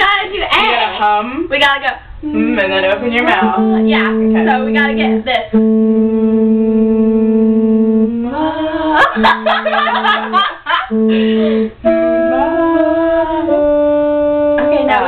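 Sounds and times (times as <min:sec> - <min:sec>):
person humming and singing notes: 0:02.2 - 0:04.5, 0:05.5 - 0:09.6, 0:10.2 - 0:15.0.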